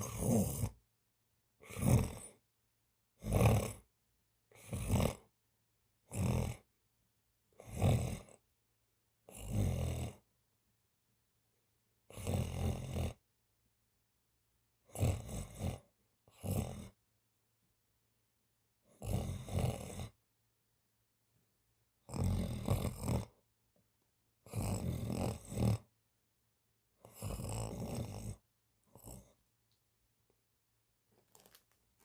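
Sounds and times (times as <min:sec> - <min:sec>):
cat snoring: 0:00.0 - 0:00.8, 0:01.6 - 0:02.4, 0:03.2 - 0:03.9, 0:04.5 - 0:05.3, 0:06.1 - 0:06.7, 0:07.6 - 0:08.4, 0:09.3 - 0:10.2, 0:12.1 - 0:13.2, 0:14.8 - 0:17.0, 0:18.9 - 0:20.2, 0:22.0 - 0:23.4, 0:24.4 - 0:25.9, 0:27.0 - 0:29.4.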